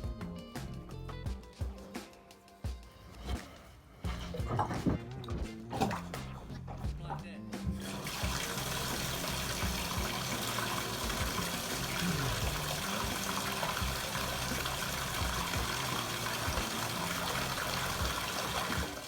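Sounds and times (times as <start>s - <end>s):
water running from a tap: 7.8s - 19.0s.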